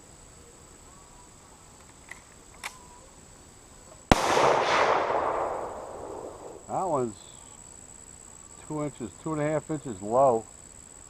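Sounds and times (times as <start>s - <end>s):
crickets chirring: 0.0s - 11.0s
rifle shot with echo: 4.1s - 6.8s.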